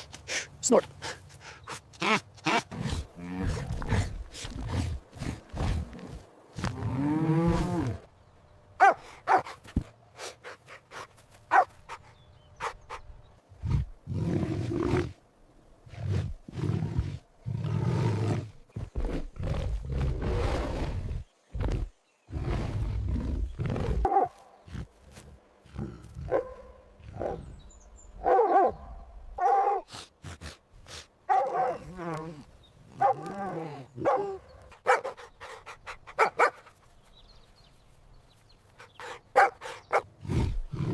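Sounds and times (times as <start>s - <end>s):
big cat roaring and growling: 40.2s - 40.9s.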